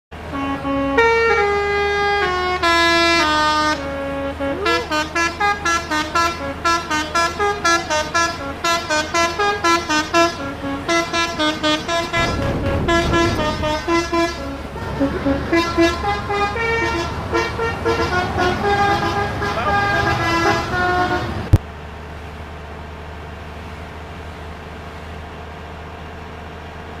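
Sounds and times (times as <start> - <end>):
multi-tone musical bus horn: 0.2 - 21.6
low rumble: 10.8 - 16.4.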